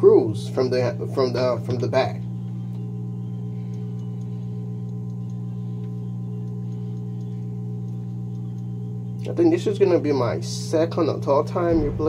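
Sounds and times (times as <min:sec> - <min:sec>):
hot-air station humming: 0:00.0 - 0:12.0
faint light ticks: 0:03.5 - 0:09.3.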